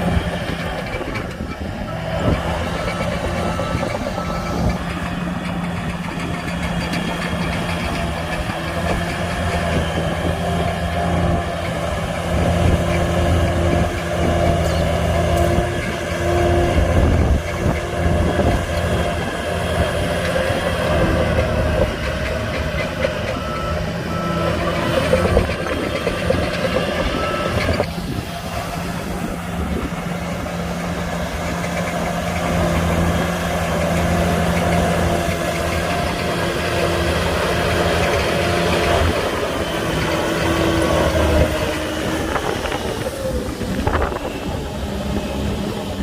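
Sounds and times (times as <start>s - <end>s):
heavy diesel machines running: 0.0s - 46.0s
reversing alarm beeping: 1.9s - 4.9s, 22.7s - 27.9s.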